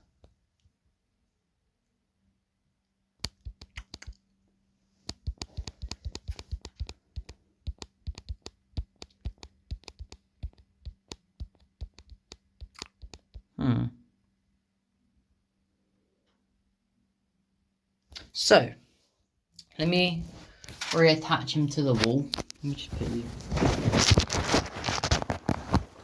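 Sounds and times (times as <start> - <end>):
wire clicking and snapping: 3.2 - 4.2, 5.0 - 13.5.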